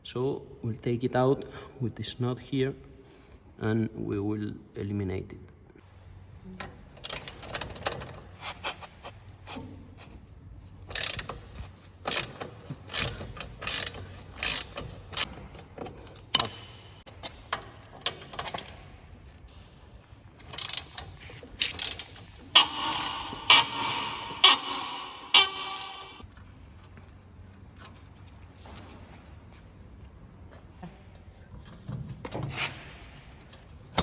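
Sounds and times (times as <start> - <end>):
ratchet wrench metal clicks: 7.0 - 7.8, 10.9 - 15.3, 20.5 - 26.2.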